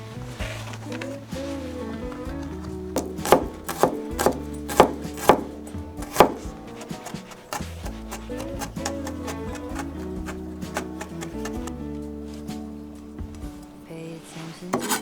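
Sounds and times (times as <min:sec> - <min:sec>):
soft background music: 0:00.0 - 0:15.0
knife chopping on cutting board: 0:03.0 - 0:11.7, 0:14.7 - 0:15.0.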